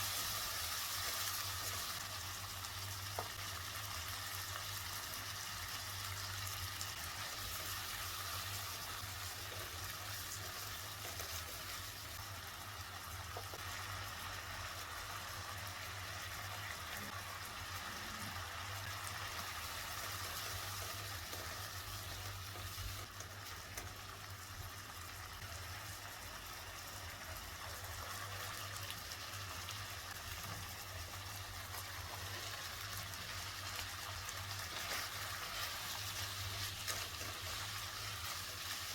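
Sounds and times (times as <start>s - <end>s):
food sizzling in a pan: 0.0s - 38.9s.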